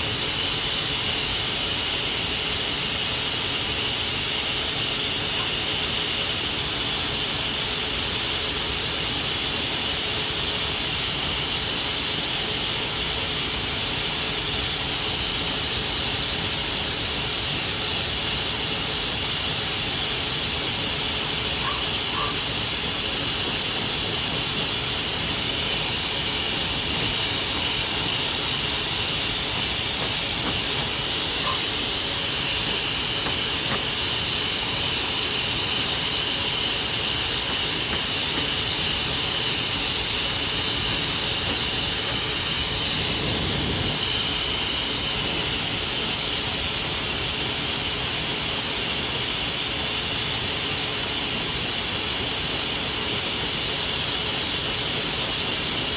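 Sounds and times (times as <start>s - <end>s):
blow dryer hiss: 0.0s - 55.9s.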